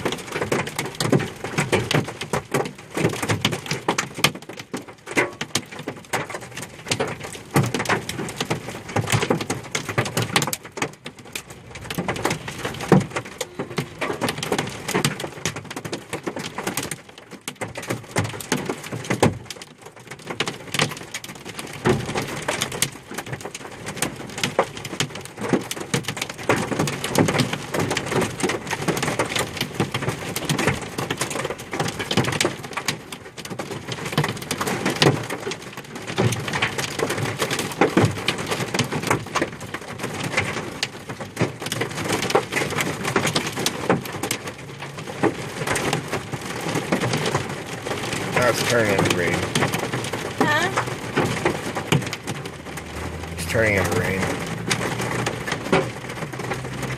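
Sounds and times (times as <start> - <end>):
hail clattering on hard surfaces: 0.0 - 56.9.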